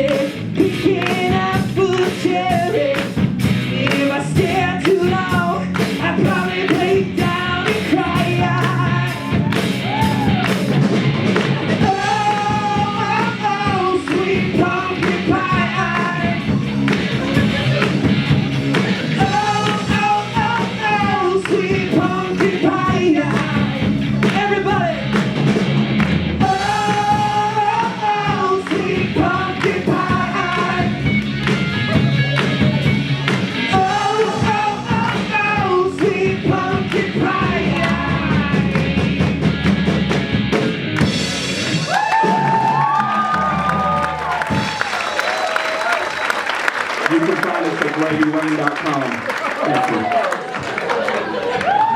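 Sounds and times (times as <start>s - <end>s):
person singing lead vocal: 0.0s - 10.5s, 11.6s - 18.0s, 18.9s - 25.2s, 26.4s - 31.2s, 31.8s - 39.2s
band playing a song: 0.0s - 51.9s.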